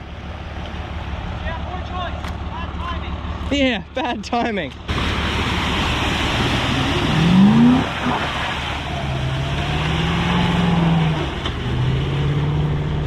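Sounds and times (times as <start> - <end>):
truck engine revving: 4.8 - 13.0.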